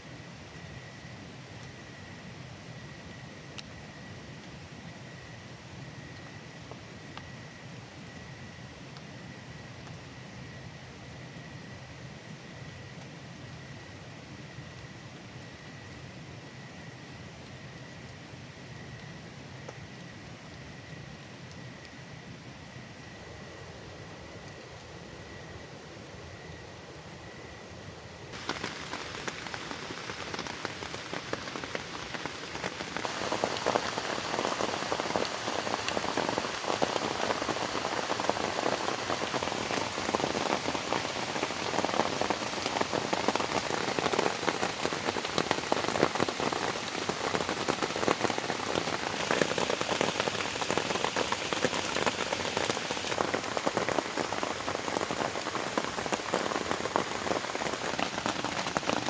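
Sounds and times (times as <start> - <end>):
heavy rain falling: 28.4 - 59.0.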